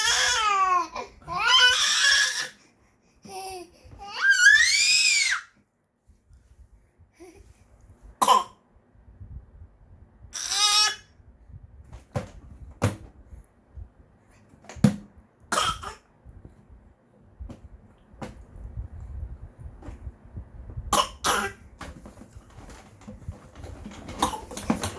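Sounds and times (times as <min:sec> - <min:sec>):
baby coughing: 0:08.2 - 0:08.6, 0:15.5 - 0:16.1, 0:20.9 - 0:21.7, 0:24.2 - 0:24.5.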